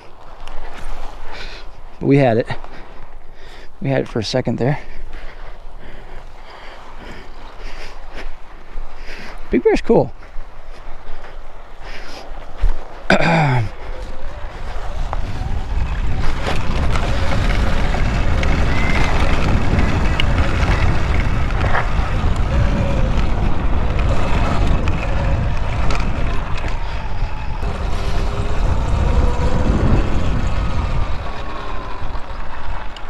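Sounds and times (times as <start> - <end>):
wind buffeting microphone: 0.0 - 33.0
electric motor whine: 13.7 - 33.0.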